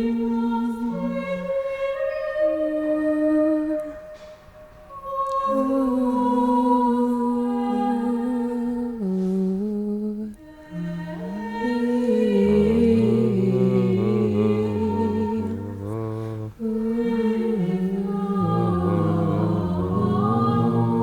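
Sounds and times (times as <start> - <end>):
slow background music: 0.0 - 21.0
low bass line: 12.3 - 16.6, 18.4 - 21.0.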